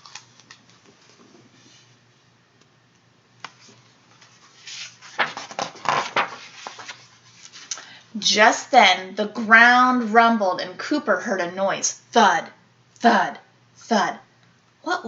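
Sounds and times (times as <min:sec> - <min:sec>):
paper page rustling: 0:00.0 - 0:02.0, 0:03.4 - 0:07.7.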